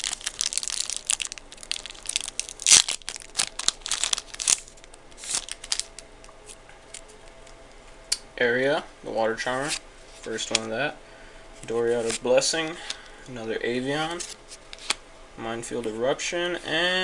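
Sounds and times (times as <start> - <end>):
foil wrapper crinkling and tearing: 0.0 - 6.0.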